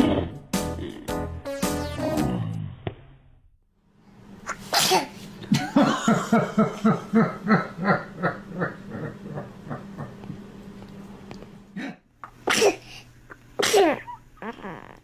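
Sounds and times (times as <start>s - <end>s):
person sneezing: 4.5s - 5.2s, 11.8s - 13.0s, 13.6s - 14.9s
rhythmic laughter: 5.5s - 10.4s.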